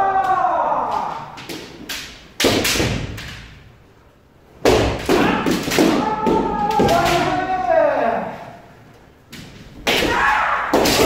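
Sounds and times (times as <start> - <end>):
long shout: 0.0 - 1.4, 5.2 - 8.3, 10.0 - 11.0
bamboo sword strikes: 1.4 - 3.5, 9.8 - 11.0.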